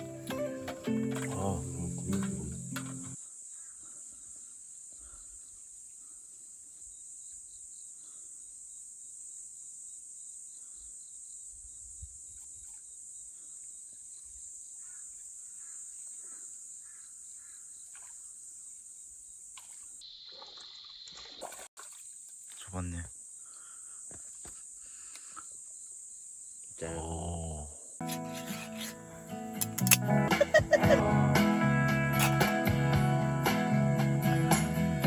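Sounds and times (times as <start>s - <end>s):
night insects chorus: 1.1s - 29.0s.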